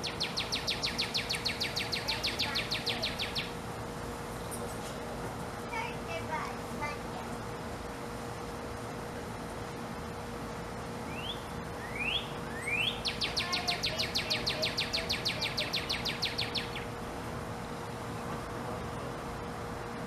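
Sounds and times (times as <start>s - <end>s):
bird singing whistles and trill: 0.0s - 3.6s, 11.1s - 16.9s.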